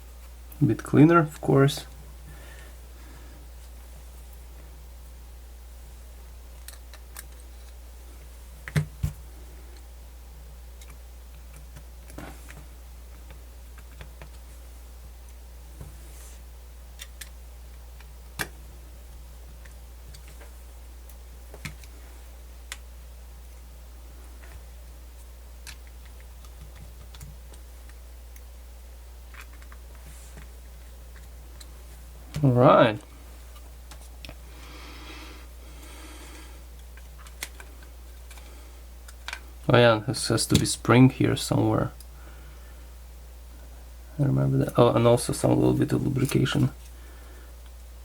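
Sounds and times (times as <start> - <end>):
steady low hum: 0.0 - 48.0
small parts and tools clicking: 6.6 - 7.8, 29.3 - 29.8, 36.8 - 38.4.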